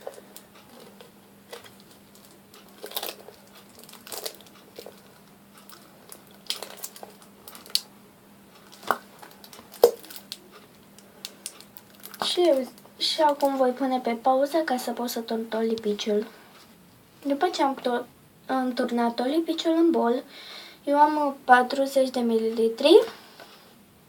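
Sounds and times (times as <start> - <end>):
plastic bottle crinkles and clicks: 0.0 - 7.9, 8.6 - 13.6.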